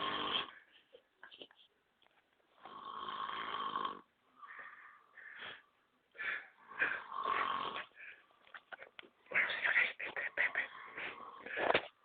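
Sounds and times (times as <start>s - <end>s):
man snoring: 0.0s - 0.6s, 2.6s - 4.1s, 6.6s - 8.0s, 10.6s - 11.6s.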